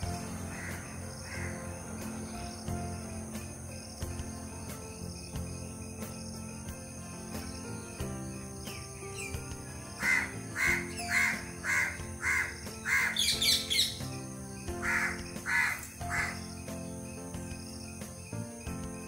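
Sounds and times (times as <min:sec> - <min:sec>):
bird harsh calls: 0:00.0 - 0:03.1, 0:07.3 - 0:16.9
background music: 0:00.0 - 0:19.0.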